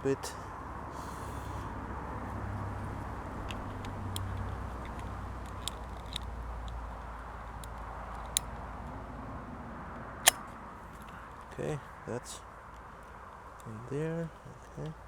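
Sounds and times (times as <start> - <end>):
clicks and taps handling parts: 3.4 - 8.5.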